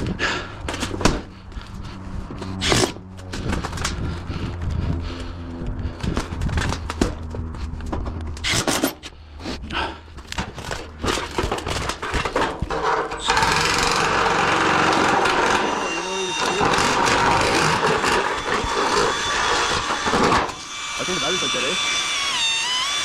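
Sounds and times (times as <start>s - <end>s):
loud steady noise: 11.0s - 22.3s.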